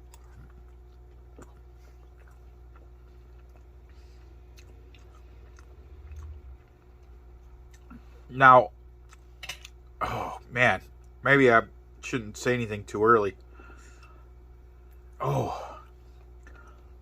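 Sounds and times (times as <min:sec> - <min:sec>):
faint chewing: 0:00.0 - 0:08.3, 0:15.9 - 0:17.0
steady low hum: 0:00.0 - 0:17.0.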